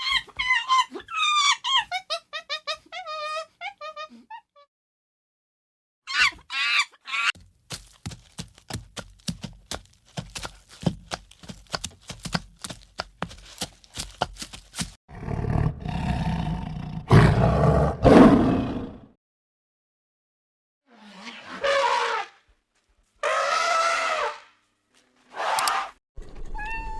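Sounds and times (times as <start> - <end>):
rough roaring animal call: 15.1 - 19.1.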